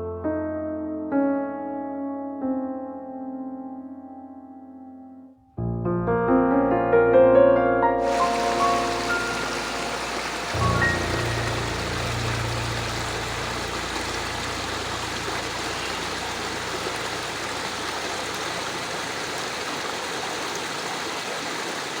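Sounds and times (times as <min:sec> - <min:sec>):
low hum: 0:08.0 - 0:19.0
heavy rain hissing: 0:08.0 - 0:22.0.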